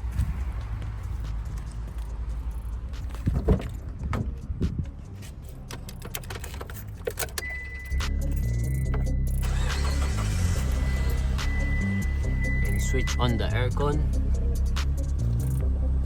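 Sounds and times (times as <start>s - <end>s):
car keys jangling: 1.0s - 13.0s.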